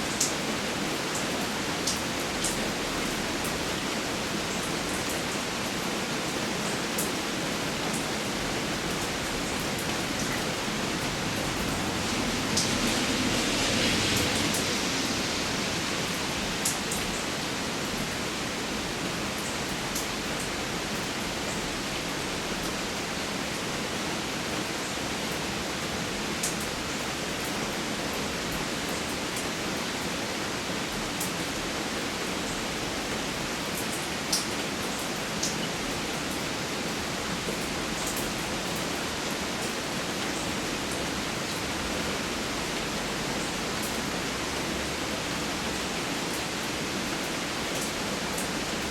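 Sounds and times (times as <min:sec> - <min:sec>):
steady rain hiss: 0:00.0 - 0:48.9.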